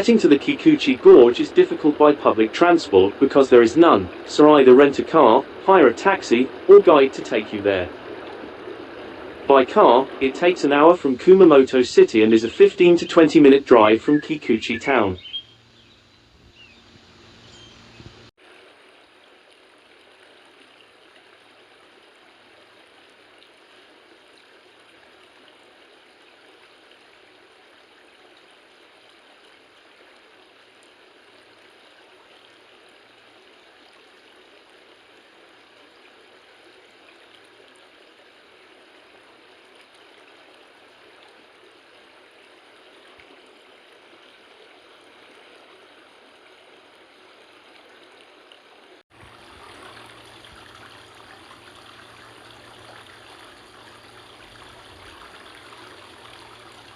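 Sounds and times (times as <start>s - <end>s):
river water rushing: 0.0s - 15.6s, 35.5s - 56.9s.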